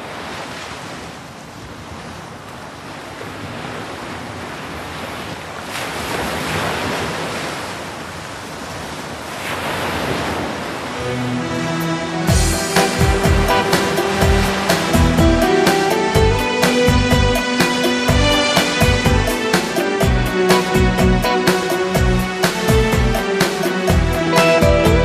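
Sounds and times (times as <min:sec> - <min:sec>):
music: 0:11.0 - 0:25.0.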